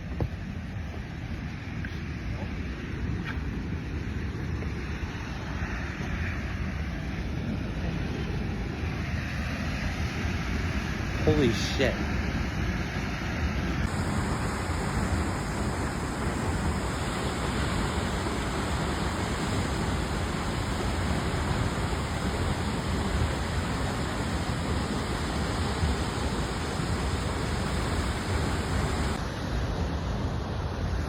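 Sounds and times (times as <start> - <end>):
waterfall rushing: 13.8 - 29.2.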